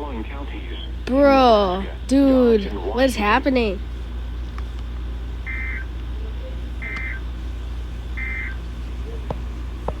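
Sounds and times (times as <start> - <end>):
steady low hum: 0.0 - 10.0
digital data tone bursts: 5.5 - 5.9, 8.2 - 8.6.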